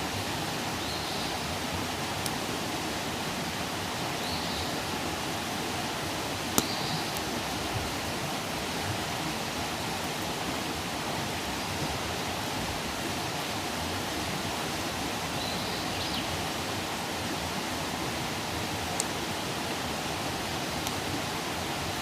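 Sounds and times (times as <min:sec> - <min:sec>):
campfire hissing and crackling: 0:00.0 - 0:22.0.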